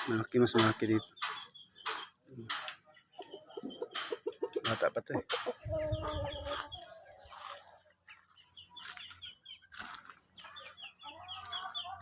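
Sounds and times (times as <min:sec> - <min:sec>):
chicks peeping: 0:00.0 - 0:12.0.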